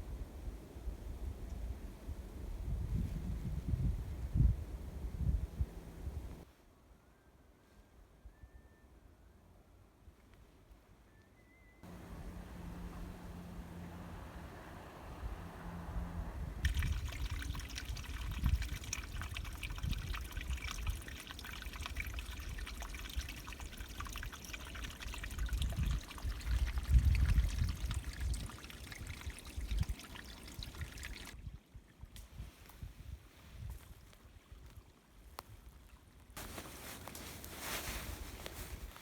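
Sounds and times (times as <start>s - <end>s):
low rumbles: 11.8s - 19.2s
water trickling and splashing: 16.6s - 32.8s.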